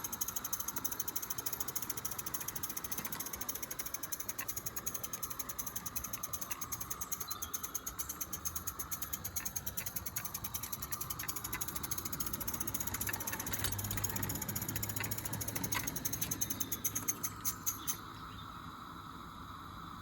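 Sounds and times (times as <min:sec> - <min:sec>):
model steam locomotive chuffing: 0:00.0 - 0:18.0.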